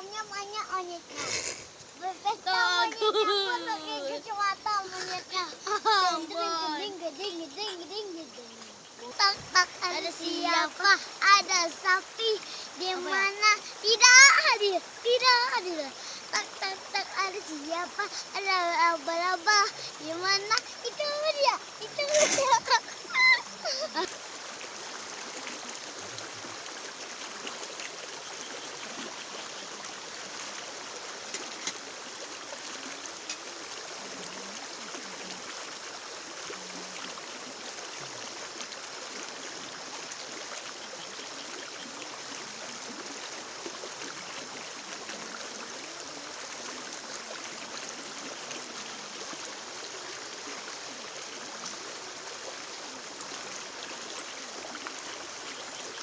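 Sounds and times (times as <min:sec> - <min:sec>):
flowing water rushing: 0:00.0 - 0:56.0
faint ticks: 0:20.5 - 0:20.8.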